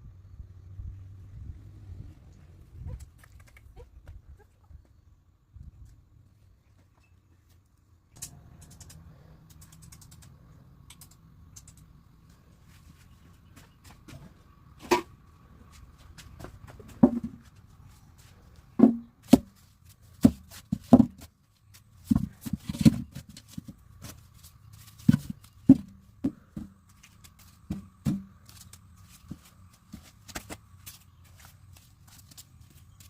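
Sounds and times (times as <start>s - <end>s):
knocks and thumps: 16.3s - 17.6s, 18.8s - 19.6s, 20.2s - 21.3s, 22.0s - 24.2s, 25.0s - 28.5s.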